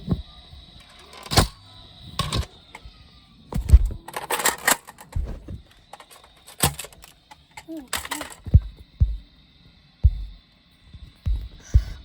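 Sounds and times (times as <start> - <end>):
plastic toy blasters clicking: 0.8 - 1.6, 3.6 - 8.5.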